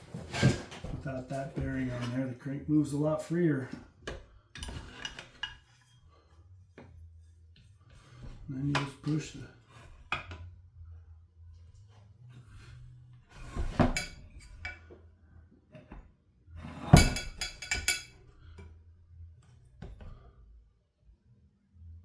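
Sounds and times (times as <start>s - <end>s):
metal tools clinking on workbench: 17.0s - 18.2s.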